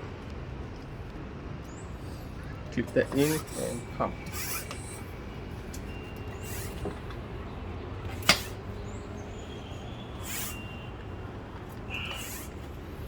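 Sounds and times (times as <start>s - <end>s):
bicycle pump air hiss: 3.1s - 5.1s, 6.4s - 6.9s, 10.2s - 10.8s, 11.9s - 12.7s.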